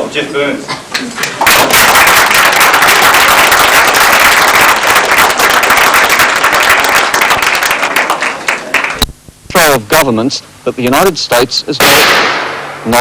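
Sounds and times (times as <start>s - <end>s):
crowd applauding: 1.2s - 9.0s.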